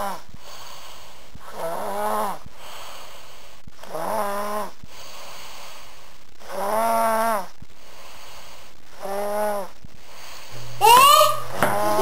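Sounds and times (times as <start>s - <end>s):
person snoring: 0.0s - 3.2s, 8.9s - 9.8s.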